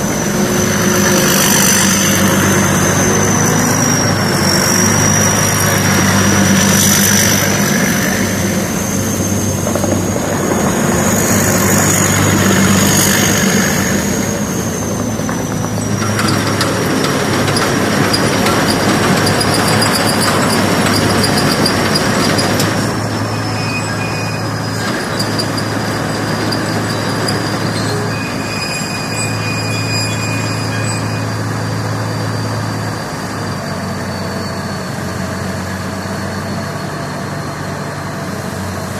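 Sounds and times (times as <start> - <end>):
high whine sinking in pitch: 0.0 - 25.2
combine harvester mechanical drone: 0.0 - 38.9.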